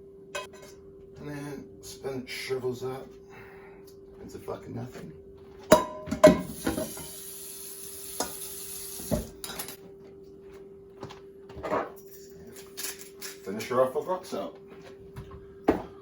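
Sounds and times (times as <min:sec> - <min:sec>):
food sizzling: 0:06.4 - 0:09.8
metallic clinks of pan and utensils: 0:12.0 - 0:13.7.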